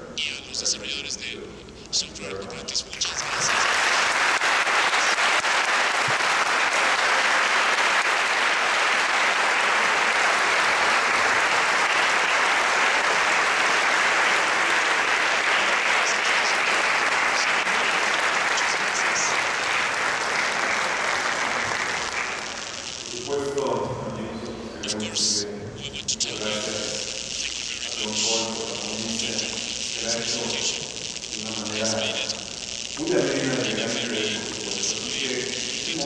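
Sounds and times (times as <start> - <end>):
audience applauding: 3.0 - 23.5.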